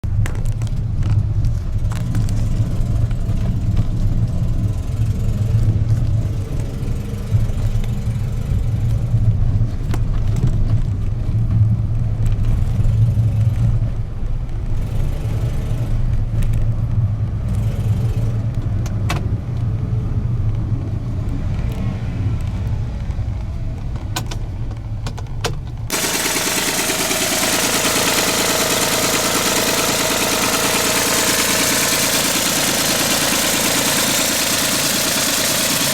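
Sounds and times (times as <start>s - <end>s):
car engine idling: 25.9s - 35.9s.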